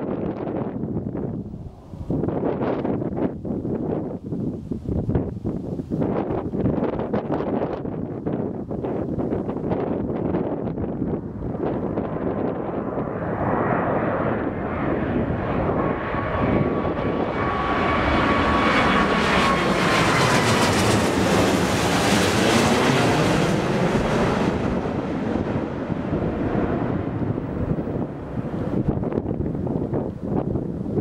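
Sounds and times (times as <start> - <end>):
jet engines roaring overhead: 6.6 - 31.0
jet whine sliding down in pitch: 11.0 - 31.0.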